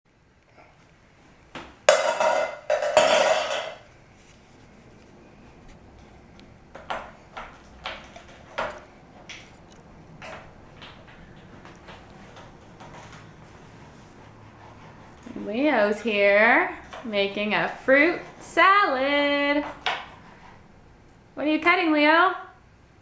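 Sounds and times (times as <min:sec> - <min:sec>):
toy knife tapping cutting board: 0:01.9 - 0:03.8.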